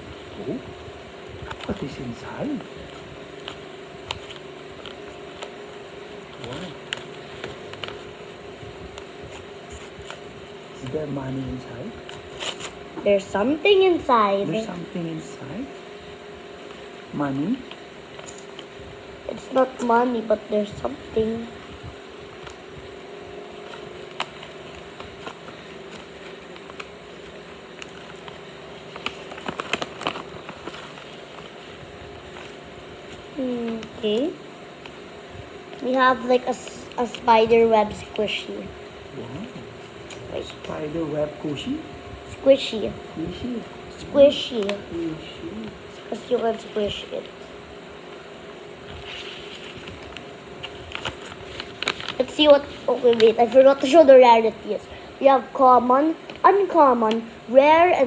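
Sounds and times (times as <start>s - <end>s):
steady low hum: 0.0s - 58.0s
packet clicks and crinkles: 1.4s - 13.3s, 23.5s - 35.1s, 48.1s - 54.2s.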